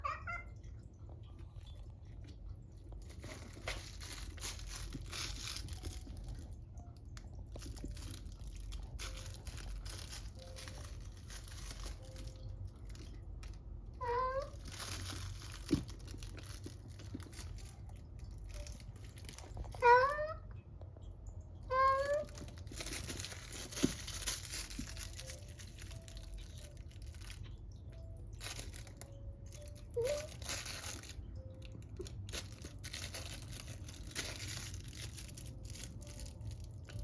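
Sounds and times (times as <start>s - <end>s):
cat crying: 0.0s - 0.6s, 14.0s - 14.6s, 19.8s - 20.5s, 21.7s - 22.4s
toy crinkling and rustling: 0.0s - 37.0s.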